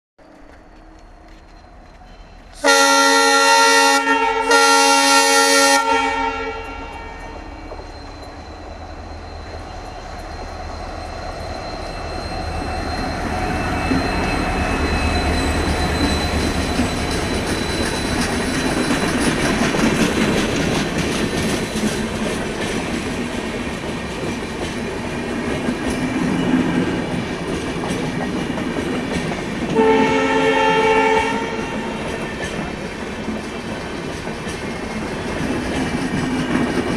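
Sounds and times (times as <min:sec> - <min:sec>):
train wheel clatter: 0:00.2 - 0:03.5, 0:06.6 - 0:36.9
locomotive horn blasts: 0:02.6 - 0:07.6, 0:29.8 - 0:32.1.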